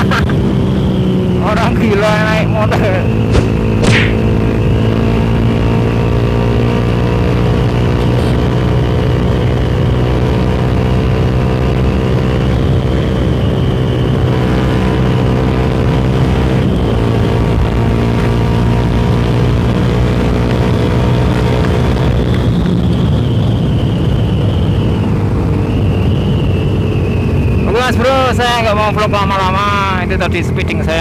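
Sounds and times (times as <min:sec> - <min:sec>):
motorcycle engine at high revs: 0:00.0 - 0:23.5.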